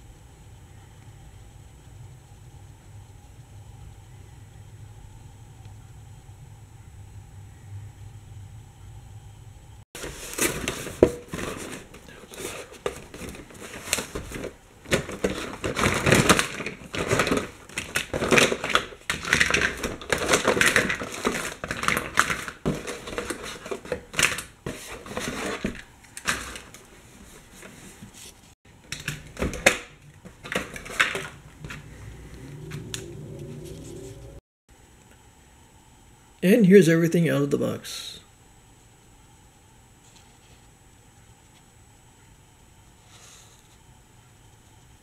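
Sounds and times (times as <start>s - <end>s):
plastic packaging crinkling: 10.0s - 32.8s.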